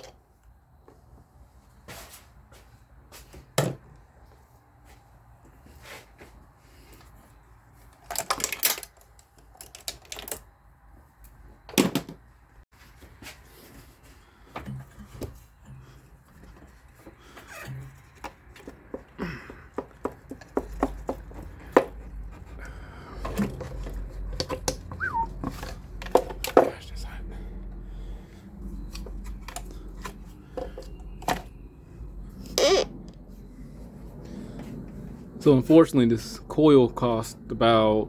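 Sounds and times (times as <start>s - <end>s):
small parts clicking and knocking: 7.9s - 10.5s
tools clattering: 8.0s - 10.5s.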